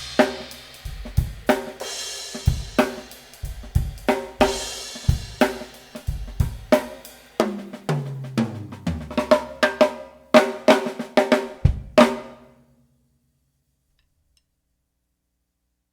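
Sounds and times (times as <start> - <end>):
snare and cymbal hits: 0.0 - 12.4.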